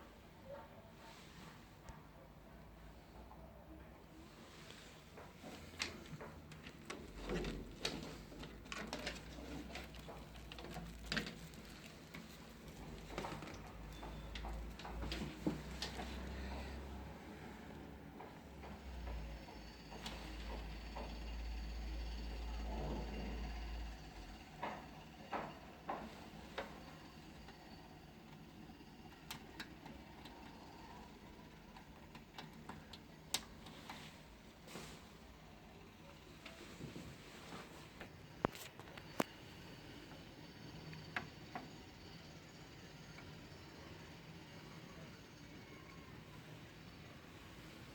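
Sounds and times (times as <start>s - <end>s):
light clicks and taps: 4.7s - 17.0s.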